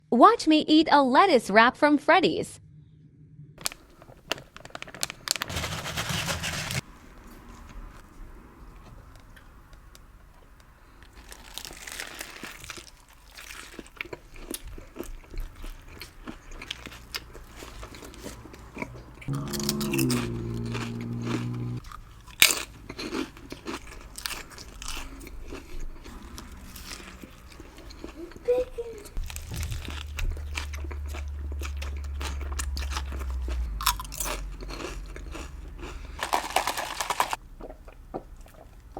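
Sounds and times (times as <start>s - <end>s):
low hum: 2.0s - 4.7s, 17.2s - 22.0s, 25.2s - 36.2s
lettuce crunching: 3.6s - 6.8s, 11.2s - 38.9s
wet chewing clicks: 12.6s - 38.9s.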